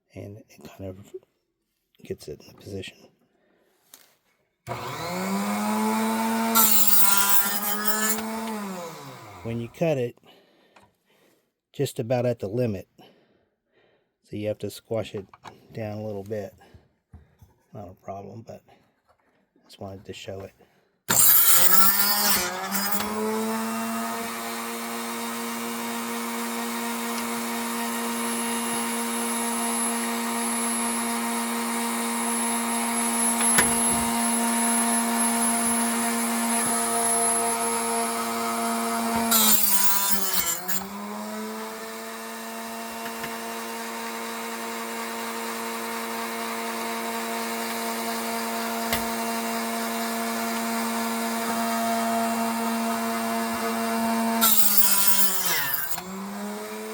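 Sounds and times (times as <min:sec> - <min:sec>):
chop saw motor whine: 0:04.7 - 0:09.7, 0:21.1 - 0:56.9
saw cutting: 0:04.7 - 0:09.8, 0:21.1 - 0:56.9.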